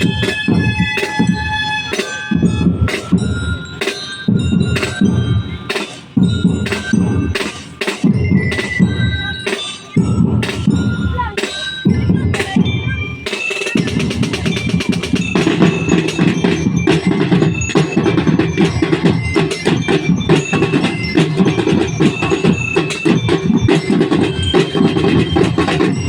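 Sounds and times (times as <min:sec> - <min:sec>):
ringing mallet notes: 0:00.0 - 0:26.0
fast dense drumming: 0:13.5 - 0:26.0.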